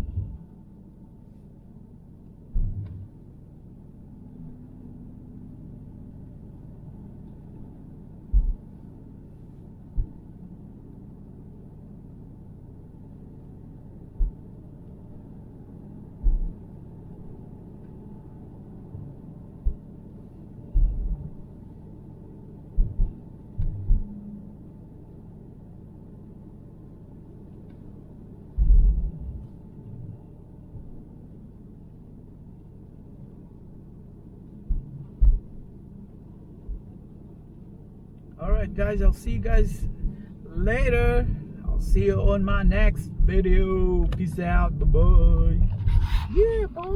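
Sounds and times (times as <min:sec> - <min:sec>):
short low thumps: 0:00.0 - 0:00.4, 0:02.5 - 0:03.2, 0:08.3 - 0:08.7, 0:14.2 - 0:14.4, 0:16.2 - 0:16.6, 0:20.8 - 0:21.4, 0:22.8 - 0:24.1, 0:28.6 - 0:30.0, 0:34.7 - 0:35.6, 0:38.7 - 0:46.9
car interior rumble: 0:00.0 - 0:25.2, 0:27.0 - 0:46.9.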